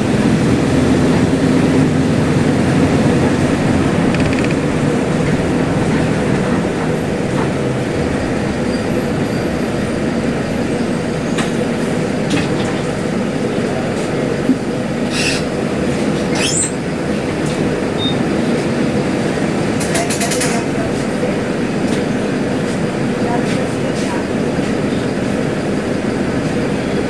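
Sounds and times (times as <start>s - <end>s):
bus diesel engine droning: 0.0s - 27.0s
high-pitched squeaks: 4.1s - 4.7s.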